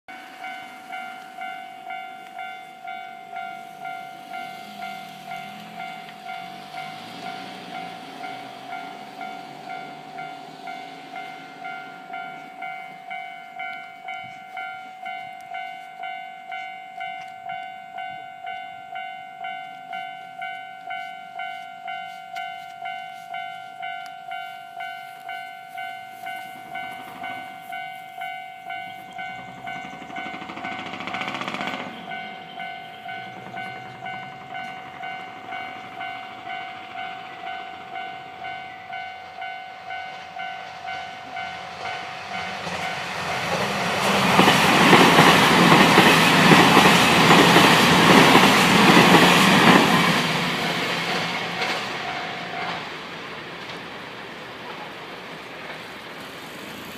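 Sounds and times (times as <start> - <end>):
level crossing bell ringing: 0.1 - 43.8
train passing: 0.1 - 56.9.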